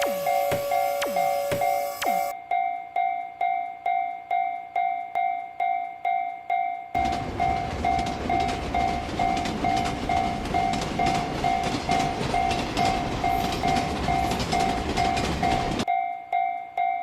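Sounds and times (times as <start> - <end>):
railroad crossing bell ringing: 0.0 - 17.0
train rumble and rail clatter: 7.0 - 15.9.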